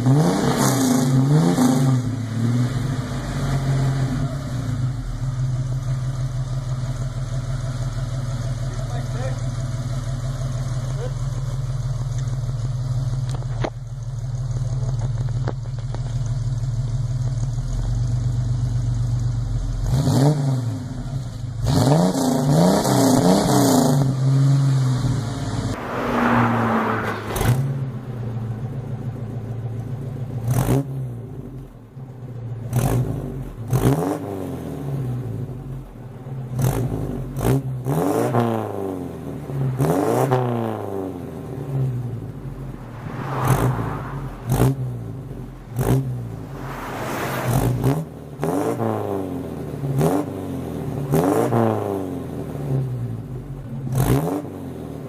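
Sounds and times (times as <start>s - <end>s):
car engine idling and revving: 0.0s - 55.0s
exhaust rumbling: 40.4s - 50.0s.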